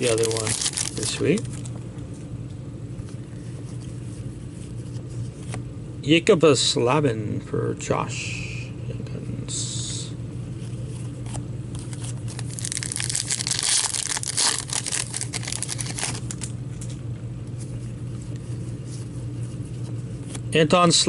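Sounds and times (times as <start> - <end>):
foil wrapper crinkling and tearing: 0.0 - 1.7, 11.8 - 16.5
steady low hum: 0.0 - 21.0.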